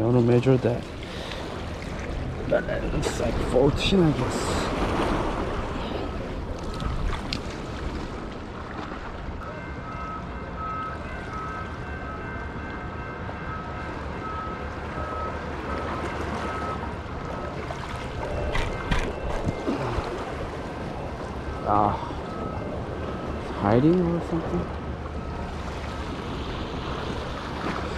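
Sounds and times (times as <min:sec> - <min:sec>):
surf washing against rocks: 0:00.0 - 0:09.4, 0:25.4 - 0:27.9
wind buffeting microphone: 0:00.7 - 0:09.4, 0:17.9 - 0:21.5.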